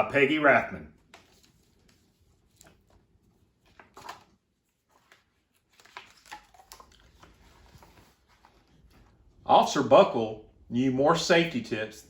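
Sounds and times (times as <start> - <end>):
book handling rustles: 1.0 - 9.4.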